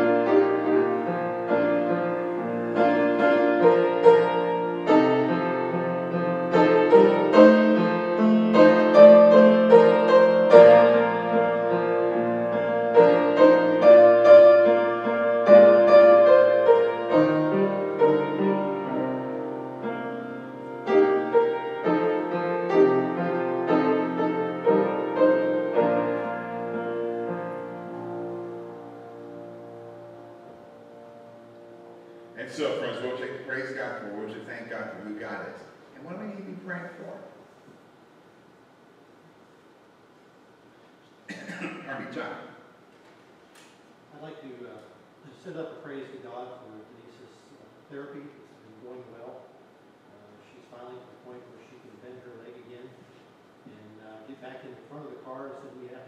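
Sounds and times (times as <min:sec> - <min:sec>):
solo piano chords: 0:00.0 - 0:33.7.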